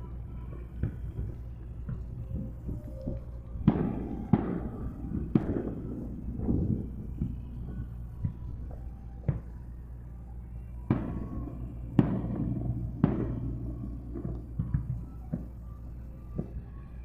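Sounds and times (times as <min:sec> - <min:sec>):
fireworks booming: 0:00.4 - 0:16.8
fireworks popping: 0:00.7 - 0:09.6, 0:10.6 - 0:16.6.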